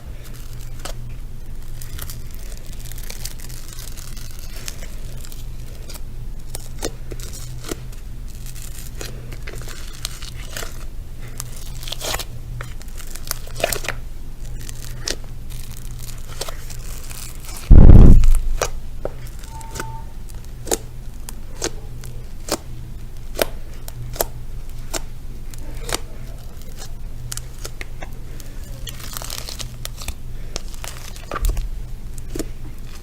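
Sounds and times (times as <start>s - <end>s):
rustling and crinkling: 0.0s - 33.0s
steady low hum: 0.0s - 33.0s
loud low thump: 17.7s - 18.8s.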